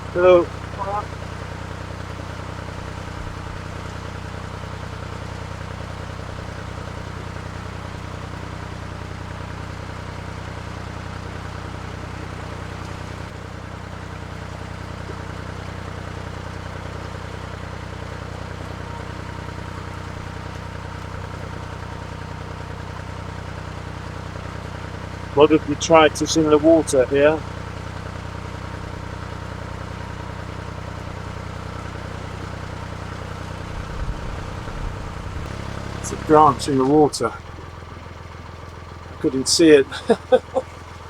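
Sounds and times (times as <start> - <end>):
boat engine running steadily: 0.0 - 41.0.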